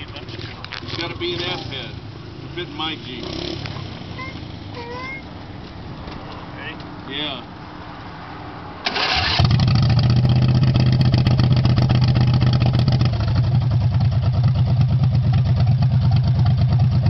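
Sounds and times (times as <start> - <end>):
lawnmower engine starting: 8.8 - 10.9.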